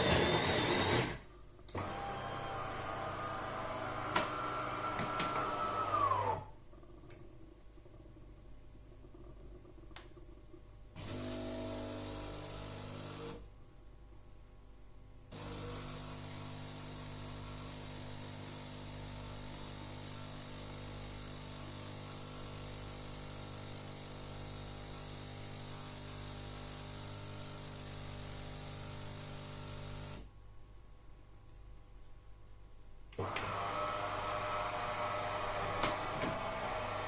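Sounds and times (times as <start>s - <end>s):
coffee machine humming: 0.0s - 6.5s, 11.0s - 13.4s, 15.3s - 30.3s, 33.2s - 37.0s.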